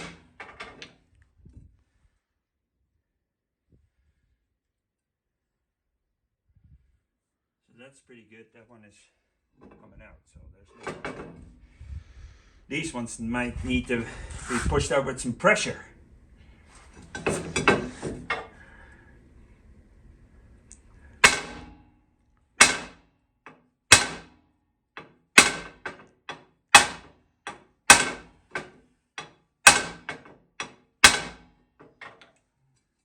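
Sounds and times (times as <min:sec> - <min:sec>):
hammer striking metal: 0:21.2 - 0:21.7, 0:22.6 - 0:23.0, 0:23.9 - 0:24.3, 0:25.4 - 0:25.9, 0:26.8 - 0:31.4.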